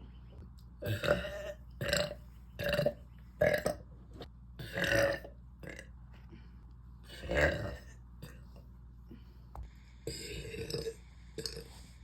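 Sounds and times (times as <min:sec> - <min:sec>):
woman burping: 0:00.8 - 0:03.8, 0:04.6 - 0:05.9.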